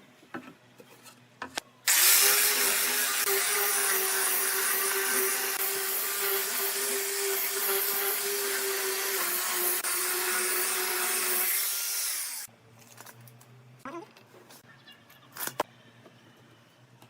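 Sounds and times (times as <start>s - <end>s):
power tool motor humming: 1.9s - 12.5s.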